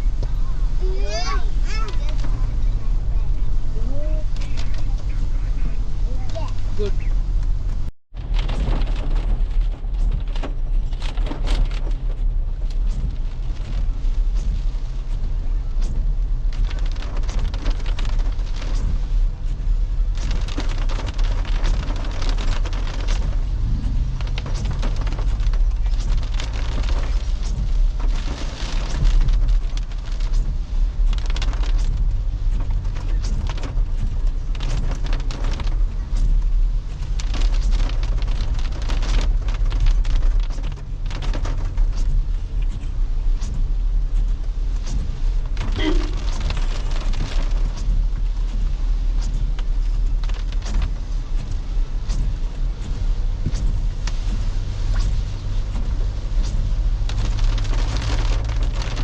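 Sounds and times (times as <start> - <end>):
car engine and road rumble: 0.0 - 59.0
sharp crackles and taps: 0.0 - 59.0.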